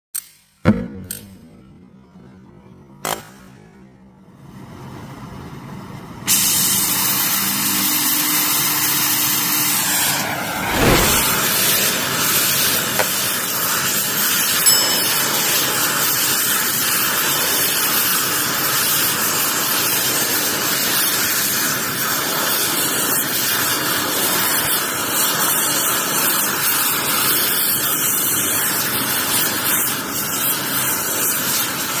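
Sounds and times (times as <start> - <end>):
gas torch flame hissing: 9.6 - 14.6
brief falling tone: 14.7 - 16.1.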